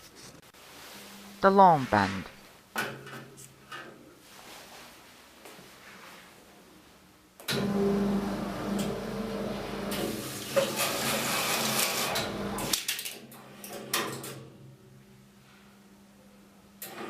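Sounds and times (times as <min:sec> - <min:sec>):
strapping machine motor hum and rattle: 0:07.5 - 0:12.8.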